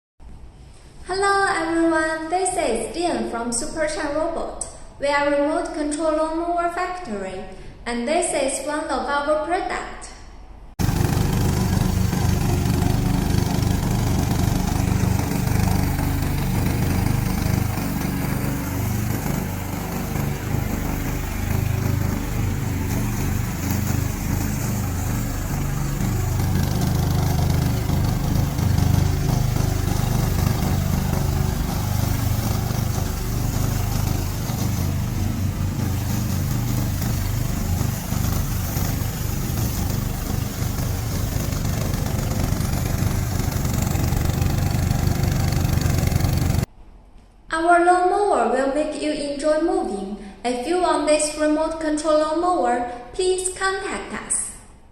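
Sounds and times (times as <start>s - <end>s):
mower gasoline engine running: 10.8s - 46.7s.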